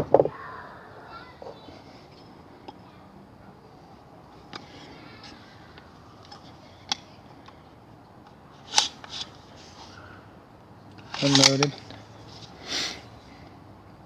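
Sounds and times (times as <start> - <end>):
rifle parts clicking: 8.7 - 9.3, 11.0 - 11.7.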